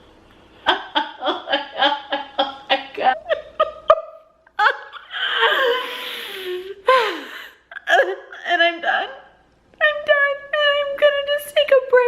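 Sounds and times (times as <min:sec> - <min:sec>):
person laughing hard: 0:00.6 - 0:07.3.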